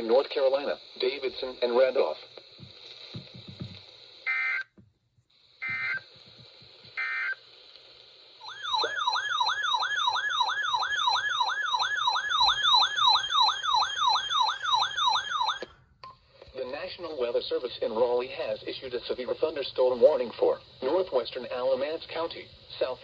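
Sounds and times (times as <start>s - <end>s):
warbling siren-like alert tone: 8.5s - 15.6s.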